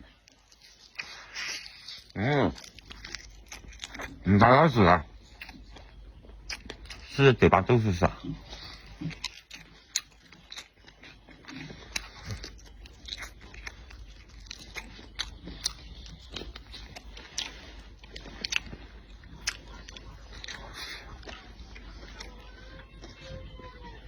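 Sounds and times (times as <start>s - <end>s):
person chewing food: 0.0s - 24.0s.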